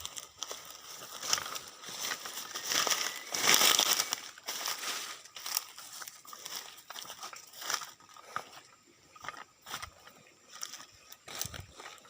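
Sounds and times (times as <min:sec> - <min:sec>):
dry rustling and crunching: 0:00.0 - 0:12.0.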